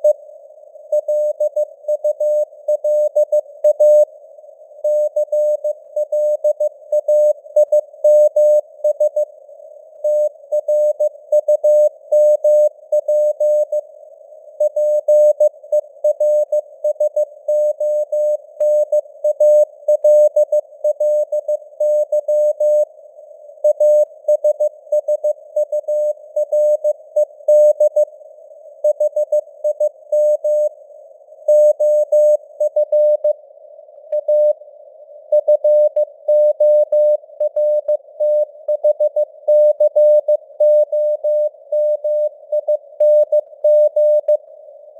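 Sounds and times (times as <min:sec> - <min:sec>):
morse code beeps: 0:35.4 - 0:44.4.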